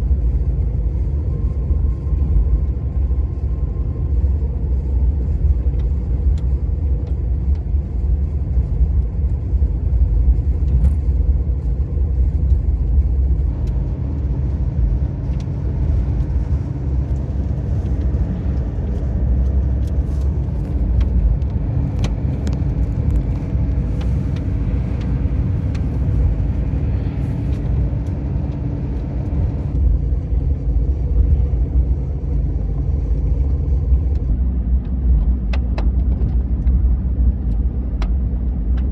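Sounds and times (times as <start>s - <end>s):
car engine and road noise: 0.0s - 38.9s.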